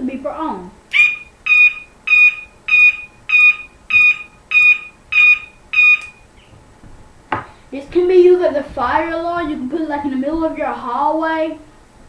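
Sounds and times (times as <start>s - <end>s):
short high-pitched beeps: 0.9s - 6.2s.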